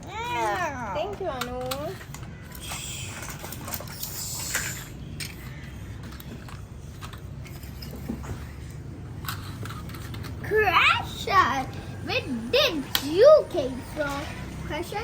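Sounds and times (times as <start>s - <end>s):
plastic toy clicks and knocks: 1.0s - 10.5s.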